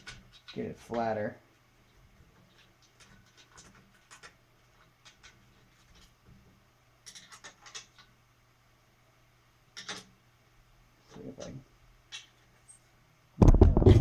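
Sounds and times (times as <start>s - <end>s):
clicks and scrapes of bike hardware: 2.3s - 6.2s, 7.1s - 8.1s, 9.8s - 10.1s, 12.1s - 12.8s
low steady hum: 7.9s - 14.0s.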